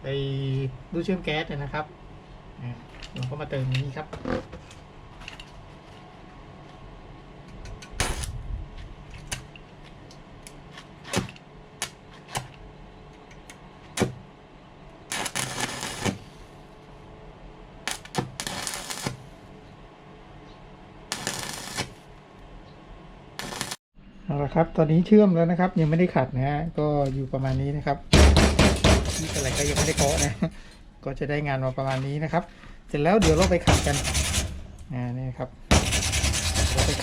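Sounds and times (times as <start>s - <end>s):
welder arc crackling: 7.9s - 8.4s, 15.1s - 16.4s, 17.9s - 19.3s, 21.1s - 22.1s, 23.4s - 23.8s.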